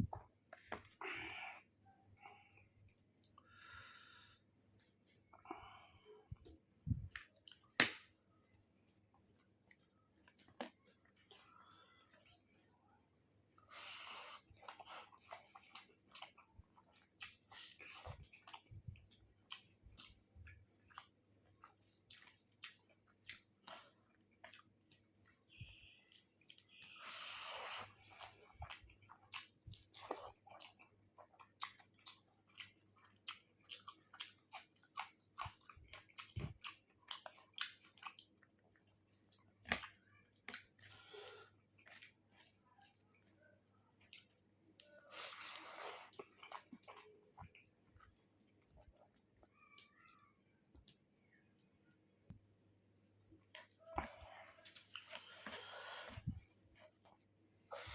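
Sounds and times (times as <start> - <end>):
person chewing food: 13.6 - 51.7, 53.4 - 57.9.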